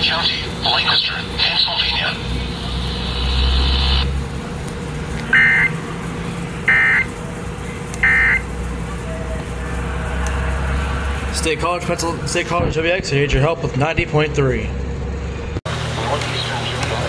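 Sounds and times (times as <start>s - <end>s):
warbling digital data tones: 0.0s - 12.4s
low steady rumble: 0.0s - 16.8s.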